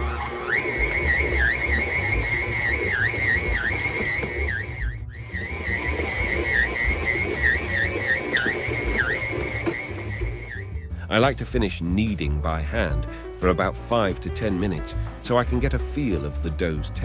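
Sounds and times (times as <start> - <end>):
stand mixer motor whining: 0.0 - 10.9.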